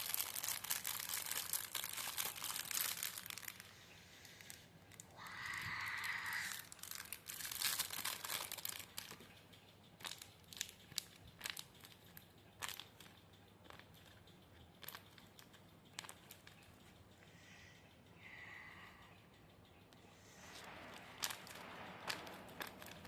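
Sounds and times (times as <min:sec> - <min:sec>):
paper packaging crinkling: 0:00.0 - 0:03.6, 0:05.9 - 0:09.2, 0:10.0 - 0:11.9, 0:20.5 - 0:23.0.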